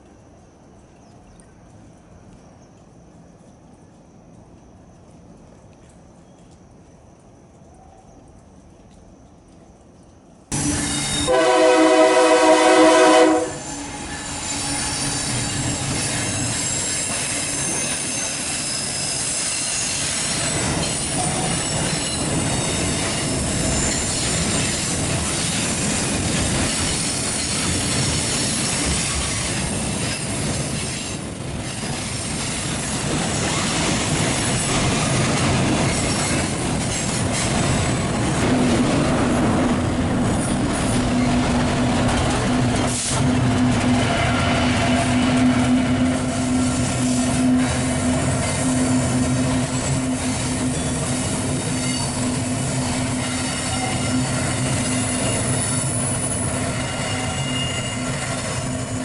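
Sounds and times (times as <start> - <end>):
rumble of train cars: 0.0 - 59.0
train wheels squealing on rails: 10.5 - 38.4, 40.2 - 59.0
train horn blast: 10.6 - 15.6.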